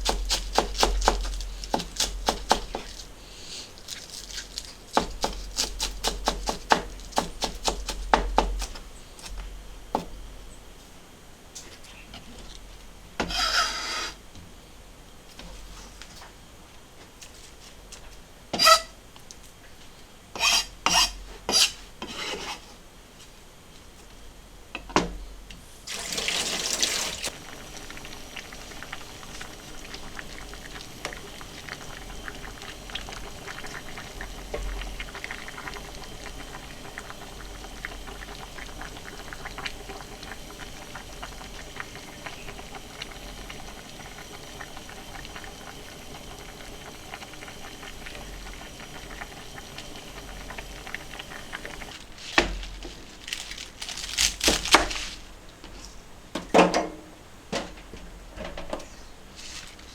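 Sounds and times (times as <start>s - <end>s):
pot simmering crackle: 0.0s - 9.5s, 25.7s - 55.6s.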